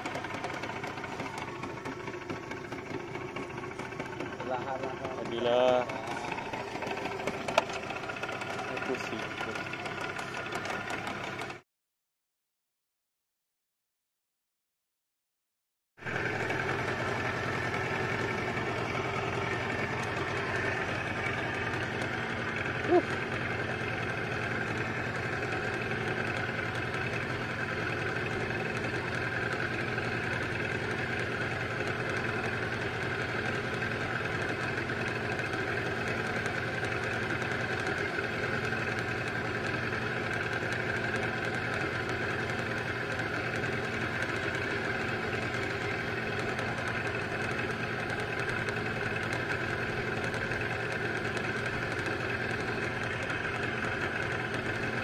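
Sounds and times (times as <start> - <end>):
boat engine droning: 0.0 - 11.6, 16.0 - 55.0.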